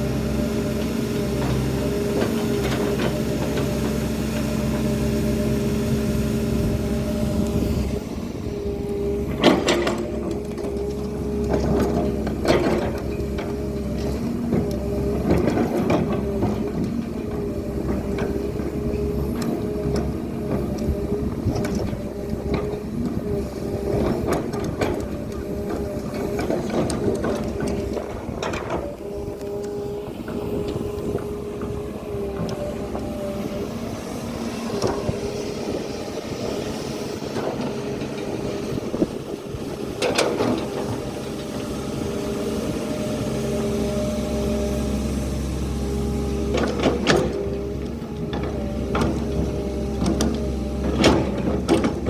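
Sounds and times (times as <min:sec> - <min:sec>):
excavator diesel engine running: 0:00.0 - 0:52.0
machine knocks and clatters: 0:46.5 - 0:52.0.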